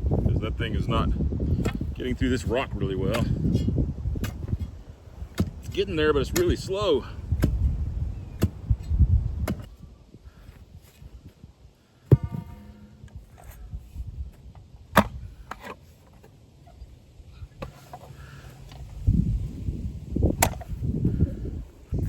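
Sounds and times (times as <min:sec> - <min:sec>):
gritty scraping: 0:00.2 - 0:11.4, 0:12.1 - 0:19.2
steel rod striking rock: 0:12.1 - 0:13.6, 0:20.4 - 0:20.8.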